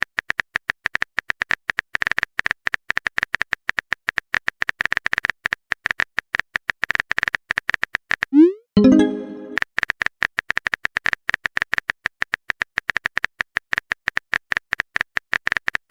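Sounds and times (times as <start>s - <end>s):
pitched chime: 8.8s - 9.6s.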